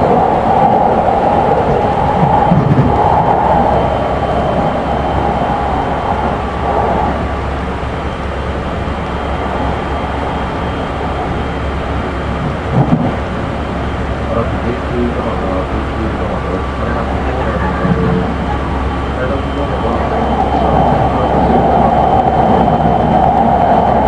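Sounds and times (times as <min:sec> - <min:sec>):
band of noise: 0:00.0 - 0:24.0
train wheel and rail rumble: 0:00.0 - 0:24.0.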